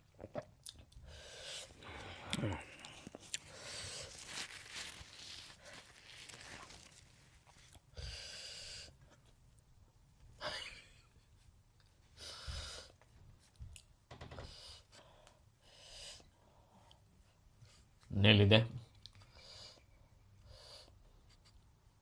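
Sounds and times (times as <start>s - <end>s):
person breathing while eating: 1.0s - 6.0s, 7.9s - 9.3s, 12.1s - 13.0s, 14.4s - 17.0s, 19.1s - 21.5s.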